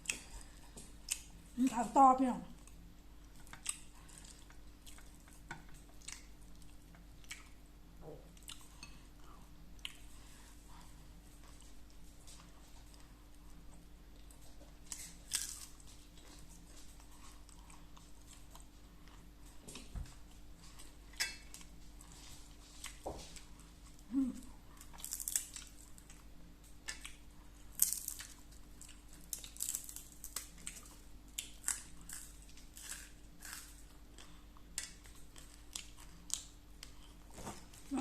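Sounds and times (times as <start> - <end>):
person chewing and smacking: 0.0 - 1.5, 2.6 - 24.1, 24.8 - 37.8
crisp crunches: 29.3 - 30.7.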